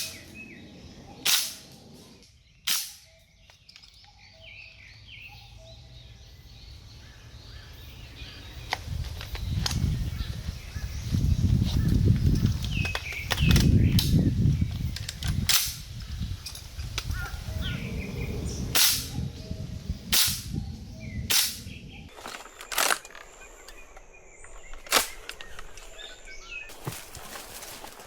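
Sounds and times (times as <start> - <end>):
airsoft gun shots: 1.2 - 1.7, 2.7 - 3.1, 18.8 - 19.1, 20.2 - 20.5, 21.3 - 21.7
rustling and handling noise: 22.1 - 28.0.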